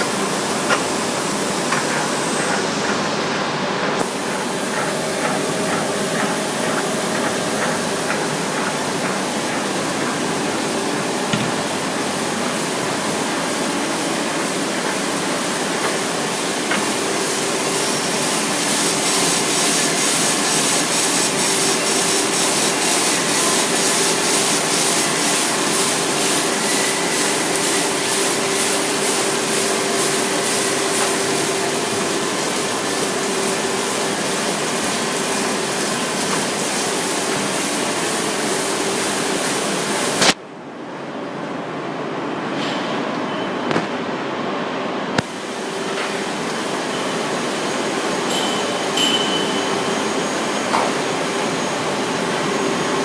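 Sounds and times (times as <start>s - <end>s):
sharp click: 40.2s - 40.4s.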